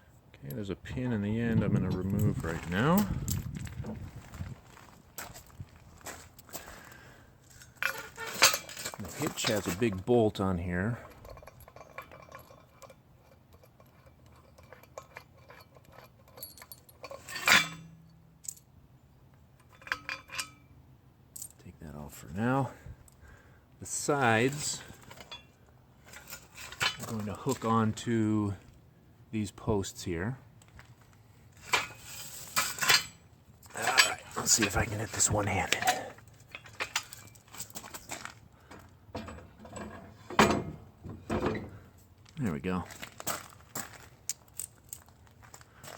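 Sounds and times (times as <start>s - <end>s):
metal parts clicking and clinking: 7.5s - 10.1s, 10.9s - 18.7s, 19.6s - 20.7s, 21.3s - 21.6s, 23.9s - 27.6s, 30.7s - 45.9s
metal clicks and knocks: 10.9s - 18.7s, 35.6s - 41.8s
loud metal clank: 39.2s - 41.8s.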